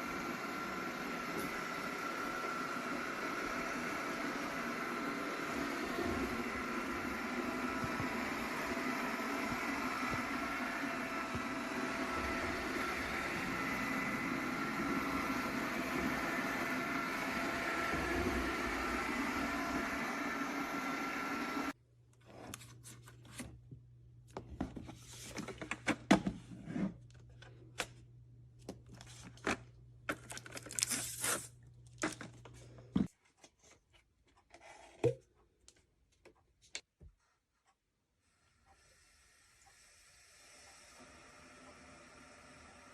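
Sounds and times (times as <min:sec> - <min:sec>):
robot vacuum whining: 0:00.0 - 0:21.8.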